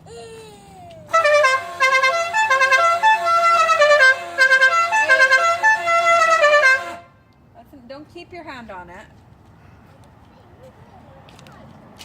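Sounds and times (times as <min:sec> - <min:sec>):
musical air horn playing a tune: 0:01.1 - 0:07.2.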